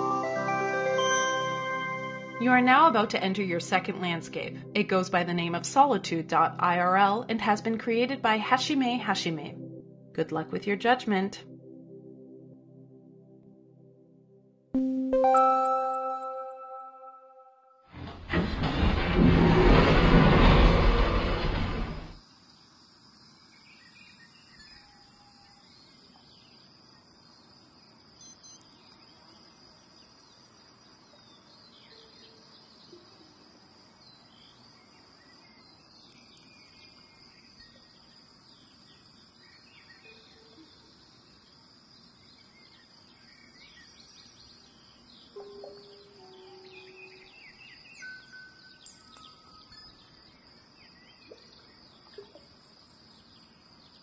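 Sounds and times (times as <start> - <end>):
insect drone: 18.4 - 54.0
bird chirps: 42.4 - 50.2.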